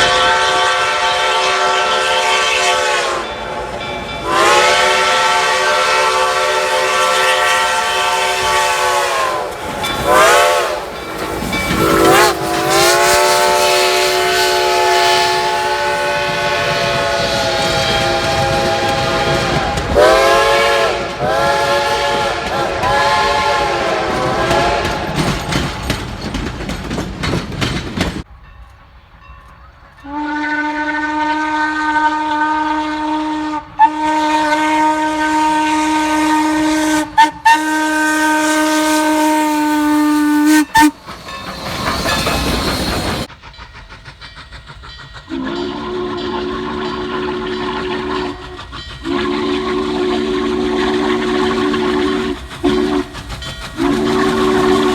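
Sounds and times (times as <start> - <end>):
steam whistle chord: 0.0 - 3.6, 4.2 - 11.0, 11.7 - 25.4, 30.0 - 41.0, 45.3 - 53.2
low steam whistle blast: 0.0 - 25.9, 30.0 - 54.9
steam hissing: 0.0 - 28.3, 30.6 - 54.9.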